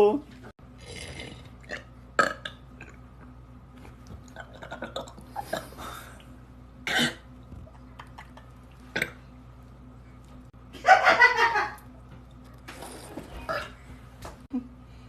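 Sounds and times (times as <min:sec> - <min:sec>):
person coughing: 0:06.8 - 0:07.2
small clicks and mouth noises: 0:07.4 - 0:09.2.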